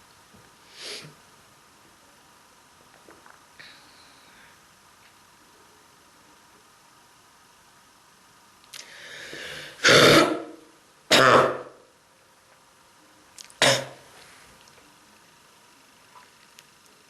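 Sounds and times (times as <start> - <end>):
drawn-in breath: 8.8 - 9.8
person coughing: 9.8 - 11.7, 13.6 - 14.0.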